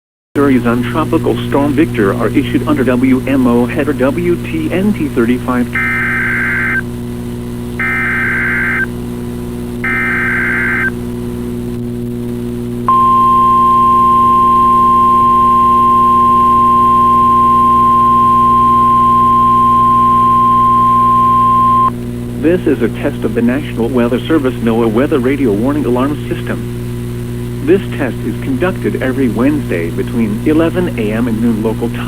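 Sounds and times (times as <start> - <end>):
low steady hum: 0.4 - 32.0
steady warning alarm tone: 5.7 - 6.8, 7.8 - 8.9, 9.8 - 11.0, 12.9 - 21.9
warbling data tone bursts: 5.7 - 6.9, 7.8 - 9.0, 9.8 - 11.0, 12.9 - 21.9.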